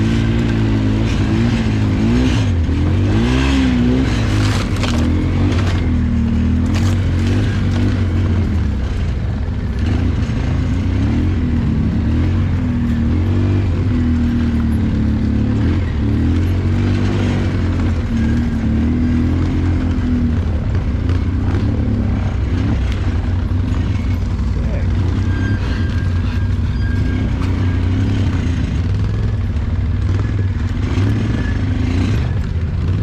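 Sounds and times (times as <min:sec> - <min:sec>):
atv engine at low revs: 0:00.0 - 0:33.0.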